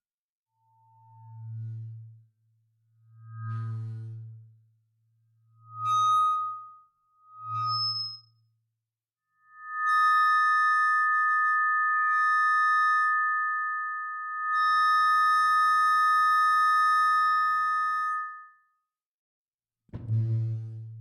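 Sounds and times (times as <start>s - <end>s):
microphone feedback squeal: 5.6s - 8.3s, 9.4s - 18.6s.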